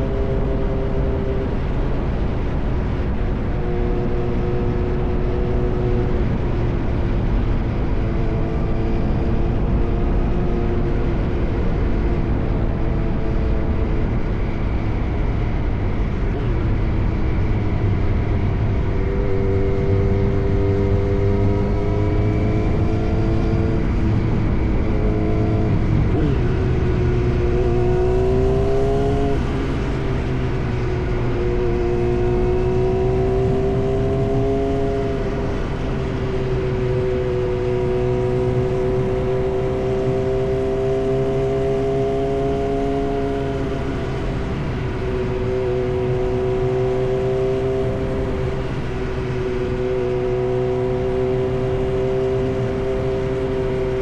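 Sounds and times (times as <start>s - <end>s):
motorcycle engine rumbling: 22.4s - 54.0s.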